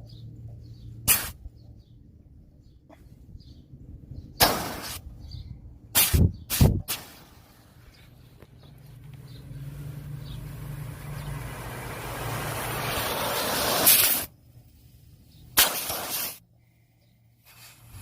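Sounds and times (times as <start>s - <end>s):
gas hissing out of coil: 12.4s - 14.3s, 15.6s - 16.4s.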